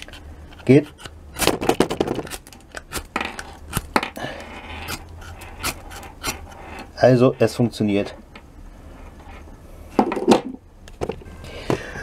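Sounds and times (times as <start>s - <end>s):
metal scraping on firesteel: 4.5s - 7.6s.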